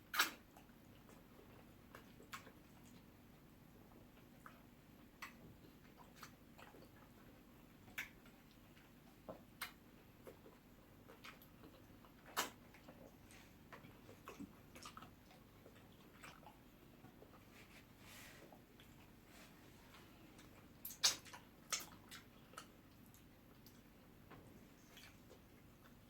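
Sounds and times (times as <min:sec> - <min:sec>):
faint room hum: 0:00.0 - 0:26.0
mouth clicks and smacks: 0:00.1 - 0:01.2, 0:05.2 - 0:06.9, 0:07.9 - 0:13.1, 0:20.4 - 0:26.0.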